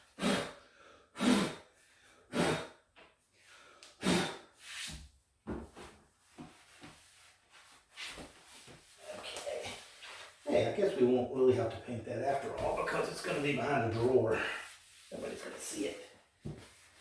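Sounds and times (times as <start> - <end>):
cleaning pad scrubbing a wall: 12.3 - 16.0.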